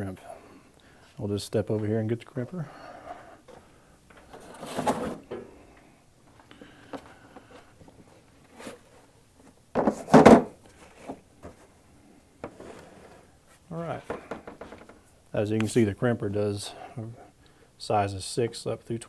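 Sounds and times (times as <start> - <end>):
scraping sliding sounds: 4.2 - 5.3.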